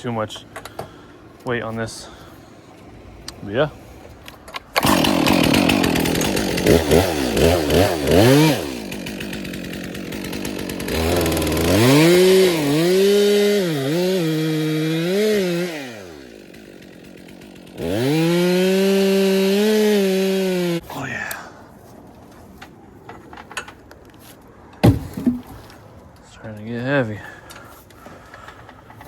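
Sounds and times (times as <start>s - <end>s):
chainsaw cutting wood: 4.6s - 20.8s.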